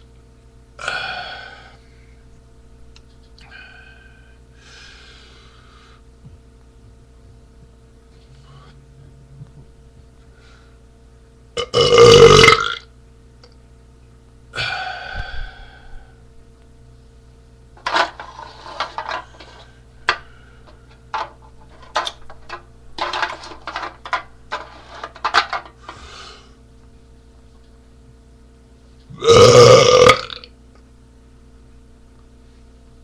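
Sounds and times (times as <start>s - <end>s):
man burping: 11.6s - 12.9s, 29.1s - 30.5s.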